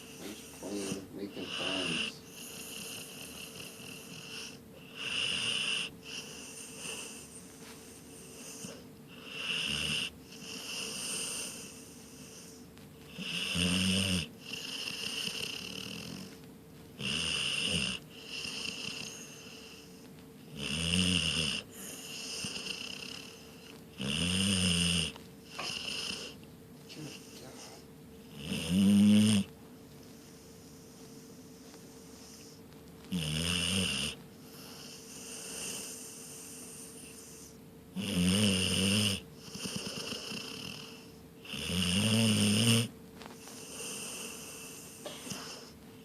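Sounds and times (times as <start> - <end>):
soft breathing: 0.0 - 4.7, 6.0 - 9.4, 10.3 - 13.3, 29.9 - 33.1, 34.3 - 37.7, 43.2 - 46.0
loud snores: 0.0 - 7.1, 8.4 - 11.7, 13.1 - 16.3, 17.0 - 19.8, 20.5 - 23.4, 24.0 - 26.4, 28.3 - 29.5, 33.1 - 42.9.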